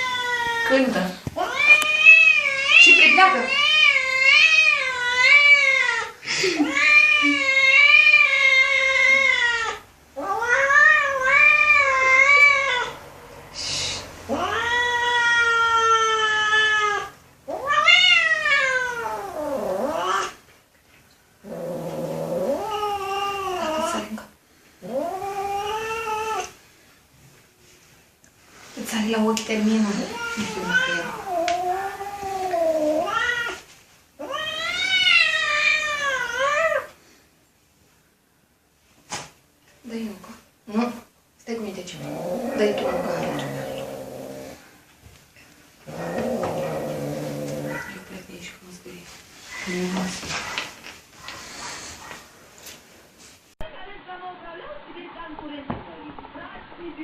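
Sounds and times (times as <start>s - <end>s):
cat meowing: 0.0s - 13.0s, 14.3s - 20.4s, 30.0s - 33.6s, 34.2s - 36.9s, 42.0s - 44.6s, 45.9s - 48.0s.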